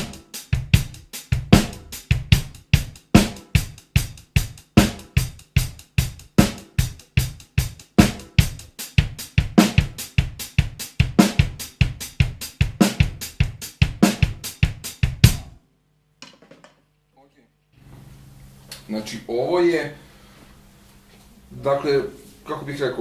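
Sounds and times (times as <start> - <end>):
bass drum: 0.0 - 15.6
snare drum: 0.0 - 15.6.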